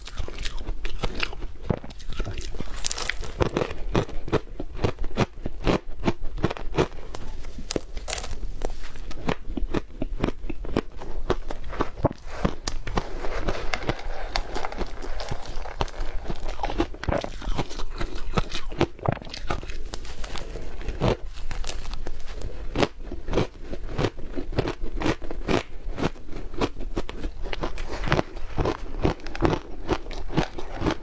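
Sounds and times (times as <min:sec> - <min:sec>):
chewing crunchy snow: 0:00.0 - 0:31.0.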